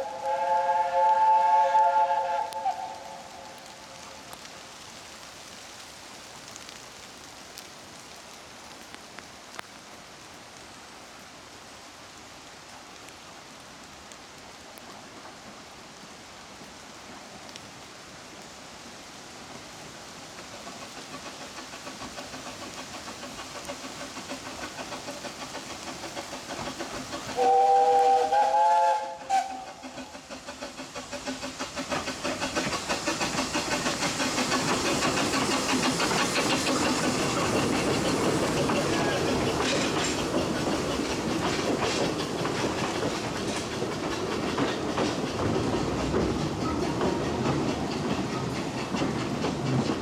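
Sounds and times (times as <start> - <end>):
steam whistle: 0.0 - 4.1, 27.4 - 29.9
steam locomotive exhaust beats: 0.0 - 5.2, 14.0 - 50.0.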